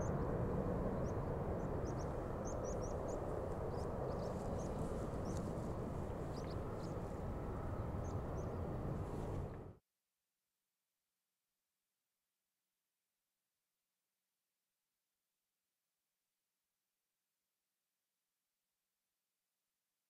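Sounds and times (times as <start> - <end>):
steady low rumble: 0.0 - 9.7
small birds chirping: 1.0 - 8.7.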